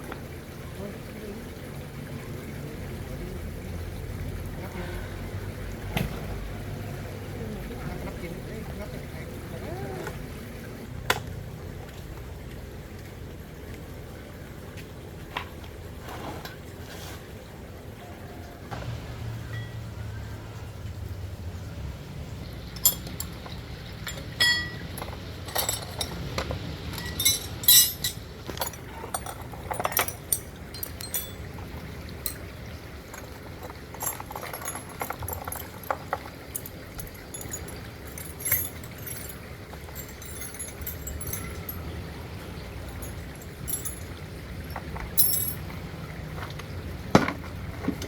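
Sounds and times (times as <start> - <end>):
low steady rumble: 17.6 - 48.0
small hard objects clinking: 22.5 - 46.6.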